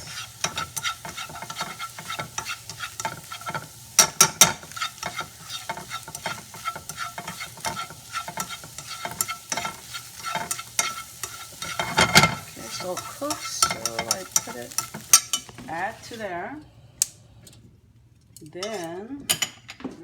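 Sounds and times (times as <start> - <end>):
chopsticks clicking against pan: 0.0 - 15.5
chicken sizzling in a pan: 0.0 - 16.6.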